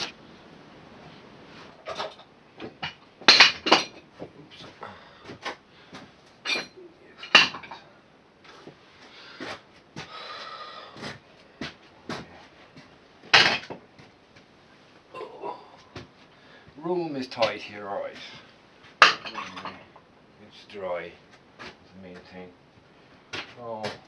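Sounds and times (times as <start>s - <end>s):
metal tools clinking and clanking: 6.4s - 7.8s, 19.0s - 19.9s.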